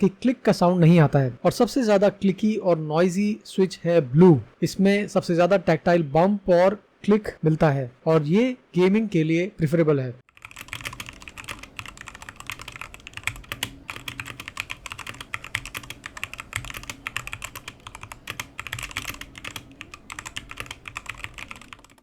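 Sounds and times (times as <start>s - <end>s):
mechanical keyboard typing: 10.3s - 22.0s.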